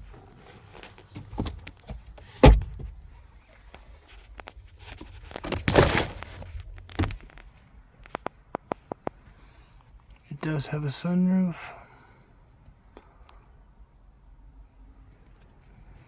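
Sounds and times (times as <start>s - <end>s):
knocks in a car: 2.4s - 3.0s
rustling scrape: 3.2s - 7.6s.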